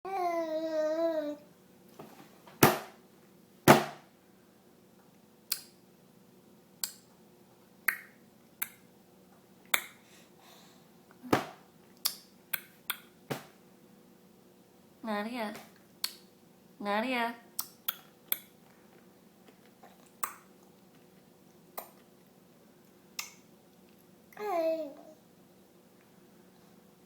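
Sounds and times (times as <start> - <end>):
tongue clicks: 5.5 - 5.7, 12.0 - 13.1, 16.0 - 16.2, 17.6 - 18.5, 23.2 - 23.4.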